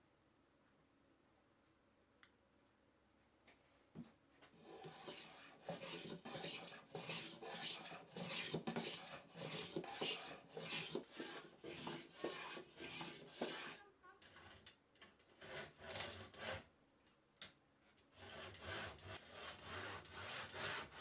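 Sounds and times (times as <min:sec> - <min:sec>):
hand tool scraping wood: 0:04.6 - 0:14.7, 0:15.3 - 0:16.7, 0:18.2 - 0:21.0.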